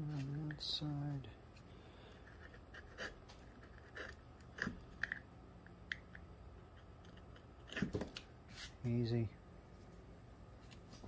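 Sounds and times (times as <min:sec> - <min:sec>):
carving tool cutting bark: 0:02.3 - 0:04.8, 0:07.1 - 0:08.1.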